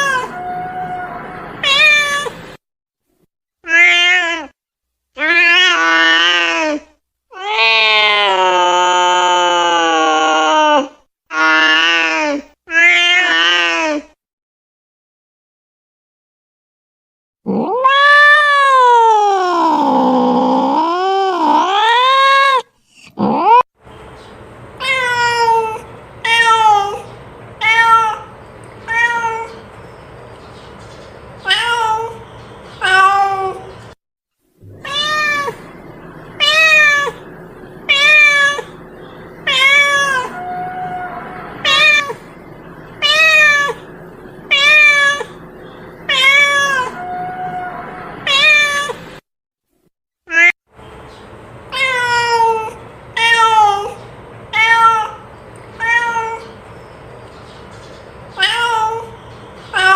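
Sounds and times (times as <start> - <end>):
cat meowing and yowling: 0.0 - 2.4, 3.7 - 4.6, 5.2 - 14.0, 17.5 - 23.6, 24.8 - 28.3, 28.9 - 29.6, 31.4 - 32.2, 32.8 - 33.7, 34.7 - 37.3, 37.9 - 38.8, 39.4 - 42.3, 43.0 - 43.9, 44.5 - 45.4, 46.1 - 49.0, 50.3 - 50.6, 51.7 - 55.2, 55.8 - 56.6, 58.4 - 59.9.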